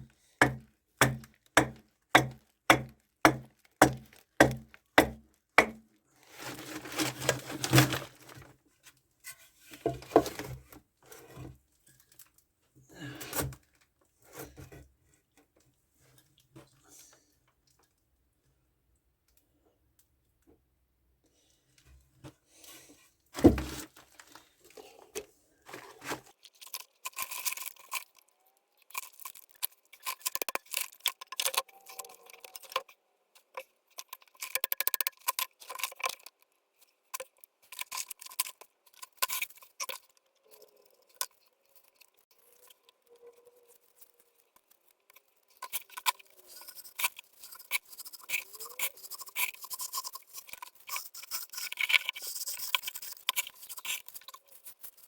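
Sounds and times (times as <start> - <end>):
tools scraping and scratching: 6.3 - 8.5, 9.2 - 12.2, 23.4 - 32.9, 37.1 - 55.0.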